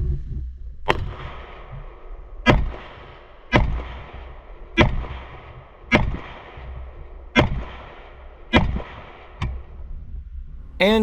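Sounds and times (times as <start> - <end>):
rifle shots echoing: 0.9 - 9.4.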